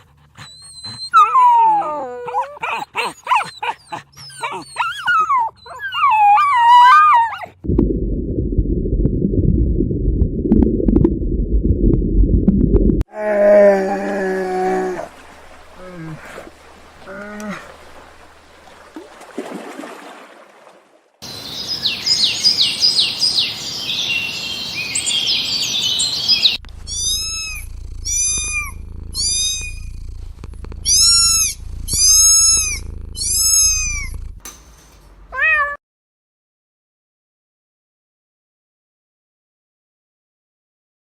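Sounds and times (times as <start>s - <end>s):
high squeaks or chirps: 26.5s - 35.1s
cat meowing: 26.6s - 34.4s, 35.3s - 35.8s.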